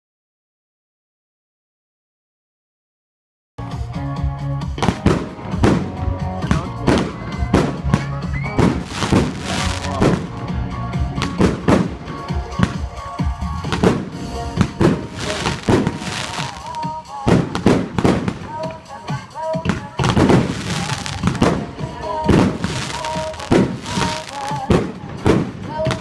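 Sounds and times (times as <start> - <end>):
loud background music: 3.6 - 26.0
firework battery firing shots: 4.8 - 10.4, 11.2 - 13.0, 13.6 - 26.0.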